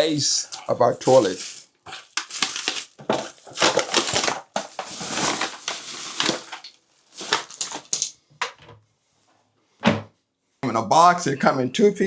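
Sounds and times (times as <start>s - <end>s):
packaging crackling and rustling: 0.5s - 8.2s.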